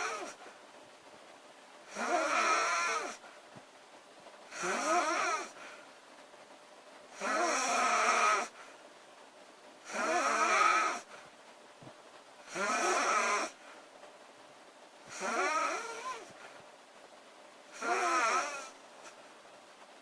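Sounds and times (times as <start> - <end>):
woman snoring loudly: 0.0 - 0.4, 1.9 - 3.2, 4.5 - 5.6, 7.2 - 8.6, 9.9 - 11.1, 12.5 - 13.6, 15.1 - 16.3, 17.7 - 18.8.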